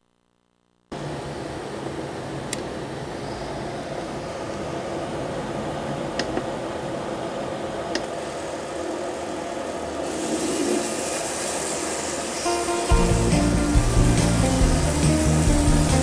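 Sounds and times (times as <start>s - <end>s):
hiss: 10.0s - 16.0s
model train whirring: 10.0s - 16.0s.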